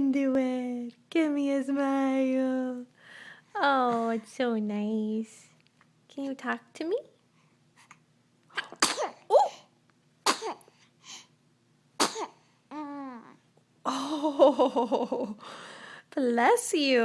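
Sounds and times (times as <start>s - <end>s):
baby sneezing: 8.6s - 10.7s, 12.0s - 12.4s
baby vocal sound: 12.0s - 13.5s.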